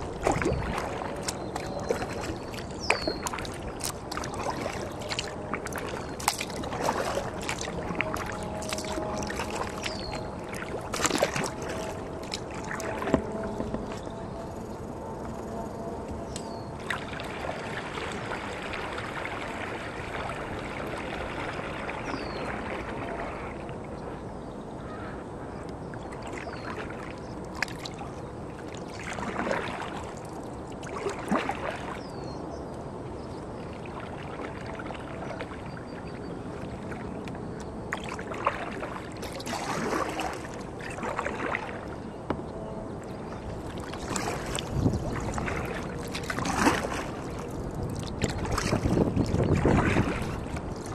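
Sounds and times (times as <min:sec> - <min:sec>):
paddle splashing water: 0:00.0 - 0:24.0, 0:25.8 - 0:50.9
faint bird calls: 0:24.4 - 0:25.7.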